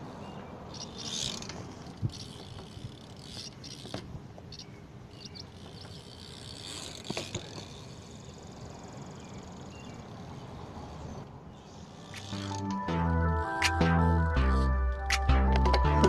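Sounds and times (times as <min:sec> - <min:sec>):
bike rolling on concrete: 0:00.0 - 0:13.2
bike hub ratcheting: 0:00.8 - 0:04.6, 0:05.4 - 0:08.8, 0:11.9 - 0:12.6.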